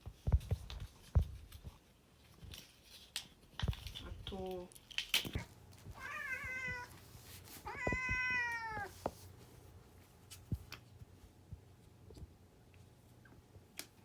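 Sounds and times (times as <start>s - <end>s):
cat meowing: 5.4s - 7.0s, 7.6s - 9.0s.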